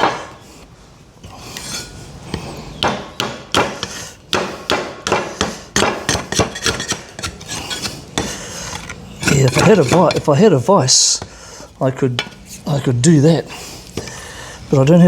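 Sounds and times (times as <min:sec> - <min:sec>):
sharp strikes on wood: 0:02.8 - 0:07.4.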